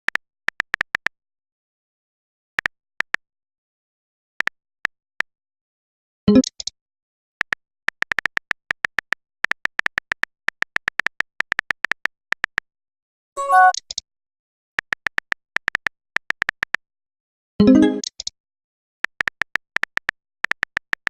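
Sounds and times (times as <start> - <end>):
short phone chime: 13.4 - 13.8.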